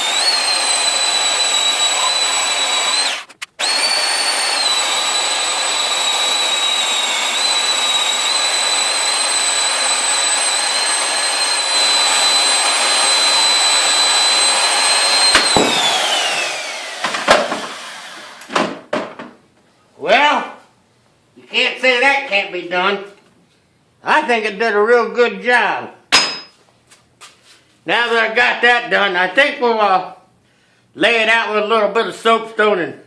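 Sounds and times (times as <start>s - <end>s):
band saw cutting steel: 0.0s - 18.4s
saw spinning down: 0.0s - 18.5s.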